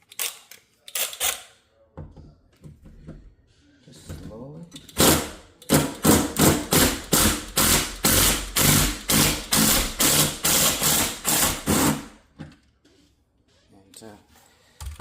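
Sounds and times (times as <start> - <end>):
electric drill boring through wood: 5.0 - 12.0.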